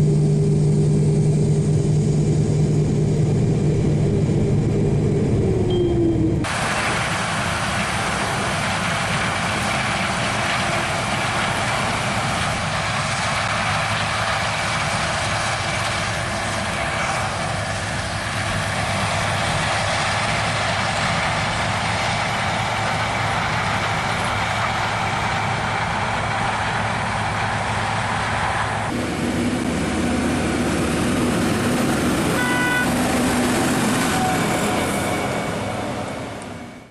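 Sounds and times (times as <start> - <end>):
diesel machinery running: 0.0 - 36.9
short beeps: 5.7 - 6.4.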